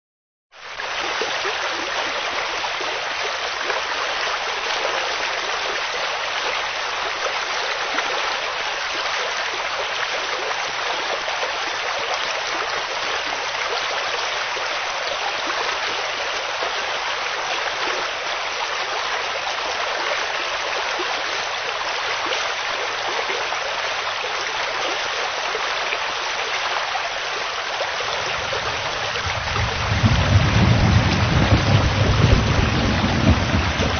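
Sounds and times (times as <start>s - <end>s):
heavy rain: 0.6s - 33.9s
low rumble: 28.2s - 33.9s.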